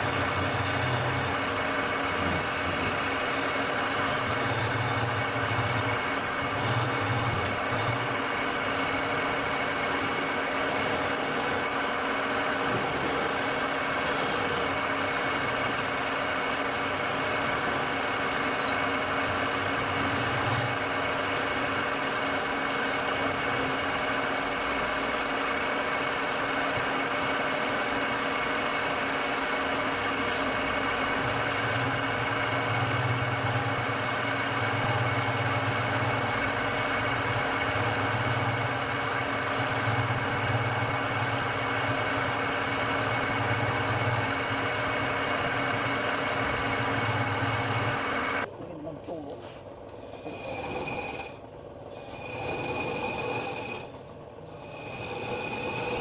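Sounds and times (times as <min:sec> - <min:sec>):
wood lathe motor hum: 0:00.0 - 0:56.0.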